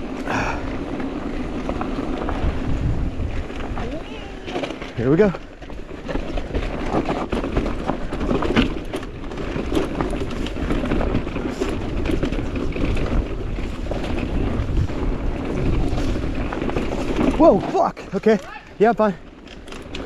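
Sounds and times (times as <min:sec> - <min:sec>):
wind on microphone: 0:00.0 - 0:04.8, 0:06.2 - 0:17.4
bike clicks and rattles: 0:00.0 - 0:20.0
bike tyre noise on dirt: 0:00.0 - 0:20.0.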